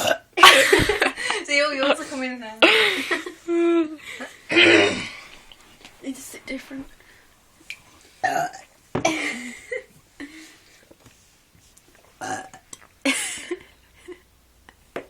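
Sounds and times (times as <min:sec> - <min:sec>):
person burping: 0:00.0 - 0:00.6, 0:04.5 - 0:05.2, 0:08.2 - 0:09.2, 0:12.2 - 0:12.8.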